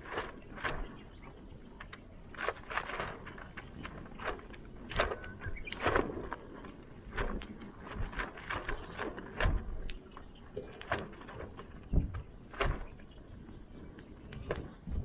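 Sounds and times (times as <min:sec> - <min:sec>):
dull thuds: 0:10.9 - 0:13.1.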